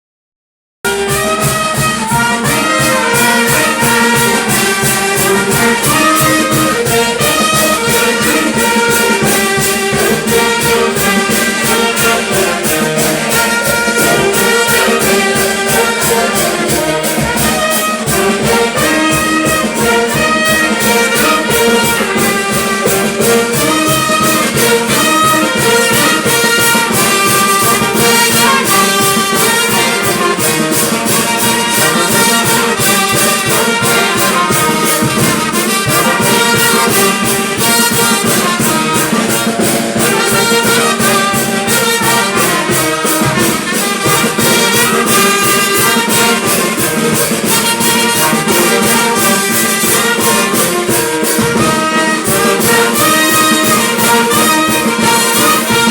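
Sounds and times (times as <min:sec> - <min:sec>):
brass band playing: 0:00.8 - 0:55.9
fast percussion beat: 0:00.8 - 0:55.9.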